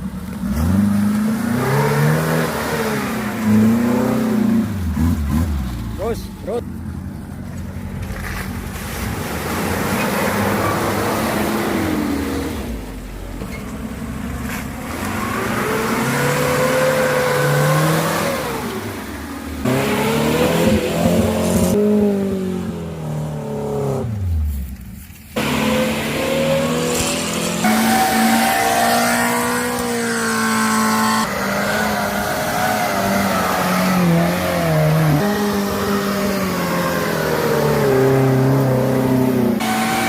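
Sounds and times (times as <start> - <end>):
vehicle engine revving: 0.0 - 7.1, 14.0 - 40.0.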